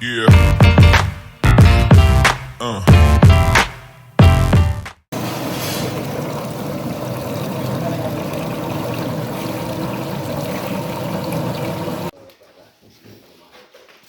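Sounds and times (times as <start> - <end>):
music: 0.0 - 5.0
peeling machine whirring: 5.2 - 12.1
splashing water: 5.2 - 12.1.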